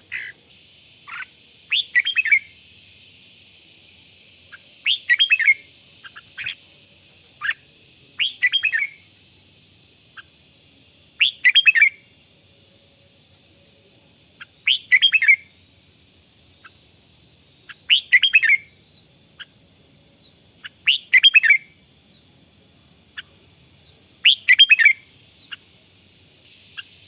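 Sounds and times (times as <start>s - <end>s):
steady high-pitched whine: 0.0s - 27.0s
bird singing short phrases: 1.1s - 2.5s, 4.5s - 6.6s, 8.2s - 9.0s, 11.2s - 12.0s, 14.4s - 15.5s, 16.6s - 22.2s, 23.2s - 25.6s.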